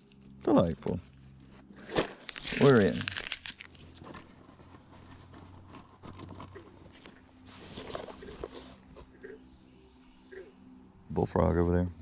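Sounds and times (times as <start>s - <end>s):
packaging rustling and clicking: 1.8s - 8.6s.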